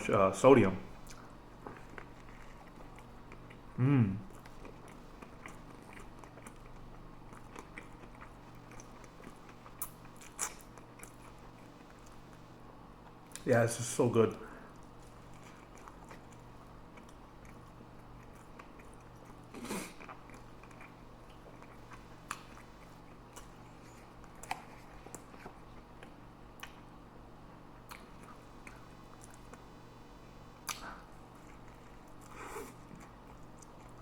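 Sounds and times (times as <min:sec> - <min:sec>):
steady low hum: 0:00.0 - 0:34.0
loud mouth sounds: 0:03.8 - 0:04.2.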